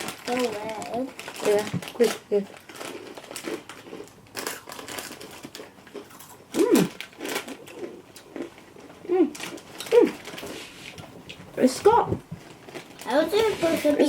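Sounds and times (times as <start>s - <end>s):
packet crinkling: 0.0s - 8.6s, 9.2s - 10.8s, 12.4s - 13.9s
snacks crunching: 1.2s - 11.4s.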